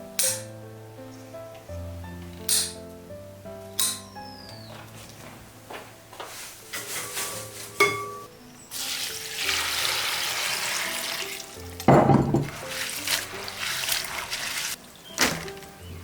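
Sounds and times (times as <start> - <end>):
soft instrumental music: 0.0 - 16.0
kitchen utensils clicking and clinking: 6.7 - 8.3, 8.9 - 15.7
steady cooking hiss: 8.7 - 11.8, 12.5 - 15.1.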